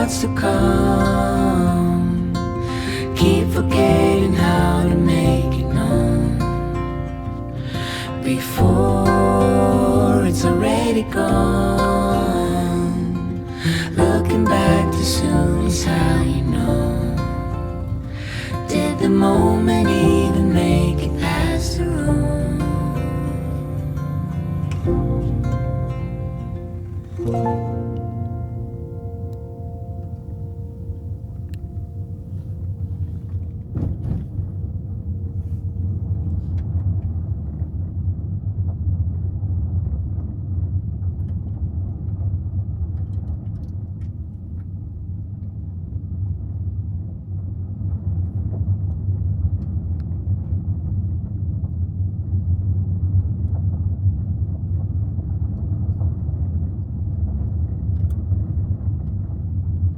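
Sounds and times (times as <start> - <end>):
musical note: 0.0 - 32.4
steady low rumble: 0.0 - 59.9.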